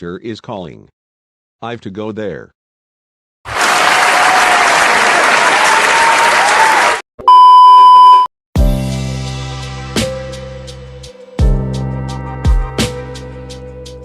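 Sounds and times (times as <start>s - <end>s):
applause: 3.5s - 7.0s
loud steady beep: 7.3s - 8.3s.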